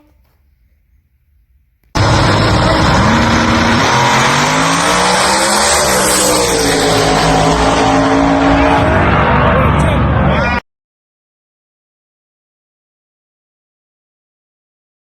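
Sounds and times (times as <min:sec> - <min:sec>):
drag race car engine: 0:02.0 - 0:10.6.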